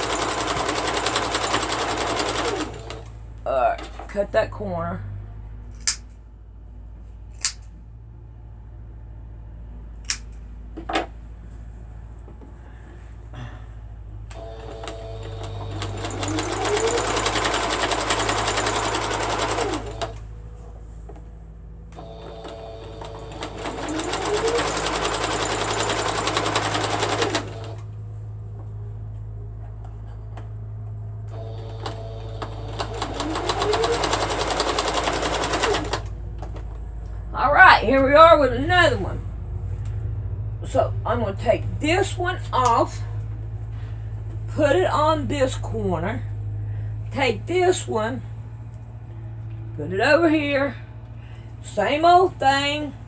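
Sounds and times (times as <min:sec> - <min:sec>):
sewing machine stitching: 0:00.0 - 0:03.1, 0:14.3 - 0:20.2, 0:22.0 - 0:27.9, 0:31.3 - 0:36.1.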